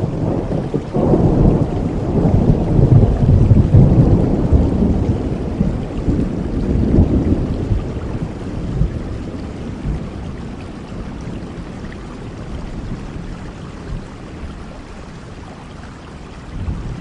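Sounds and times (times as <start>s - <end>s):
thunder rolling: 0.0s - 11.7s, 16.6s - 17.0s
rain falling: 0.0s - 17.0s.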